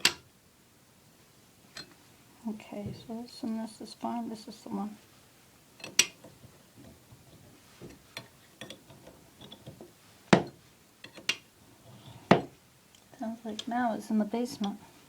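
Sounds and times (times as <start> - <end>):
wire knocking in drain pipe: 10.3 - 11.4.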